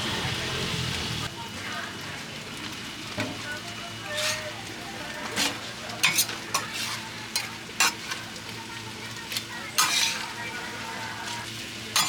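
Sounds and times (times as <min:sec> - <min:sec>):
meat sizzling on a griddle: 0:00.0 - 0:12.0
spatula scraping a griddle: 0:04.0 - 0:08.6, 0:09.2 - 0:12.0.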